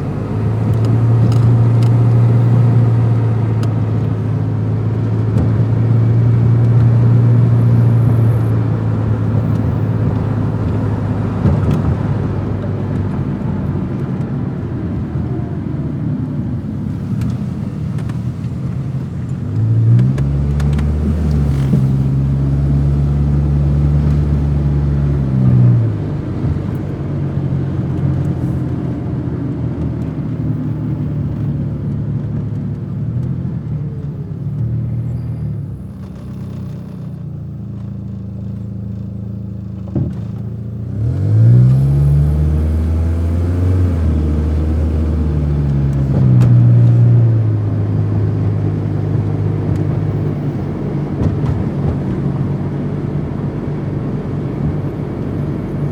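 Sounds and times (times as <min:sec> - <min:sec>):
car engine running: 0:00.0 - 0:55.9.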